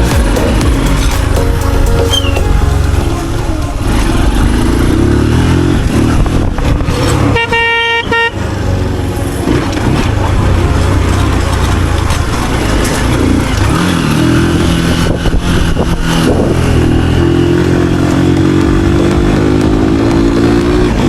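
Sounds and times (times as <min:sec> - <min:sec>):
motorcycle engine and road noise: 0:00.0 - 0:21.0
vehicle horn blast: 0:07.2 - 0:08.8.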